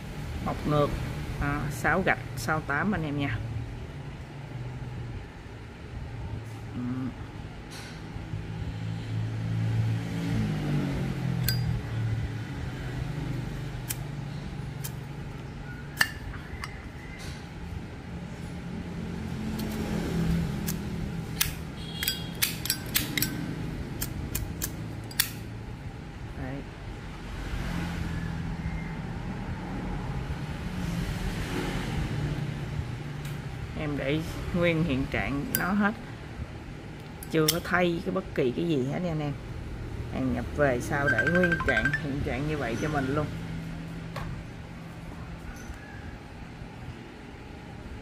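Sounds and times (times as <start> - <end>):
metallic lighter clicks and clinks: 11.4 - 11.8, 21.4 - 23.4, 24.0 - 25.4.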